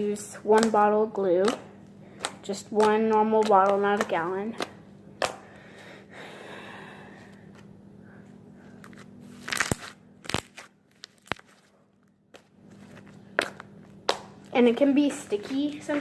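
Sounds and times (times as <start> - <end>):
slime squishing: 0.0 - 5.6.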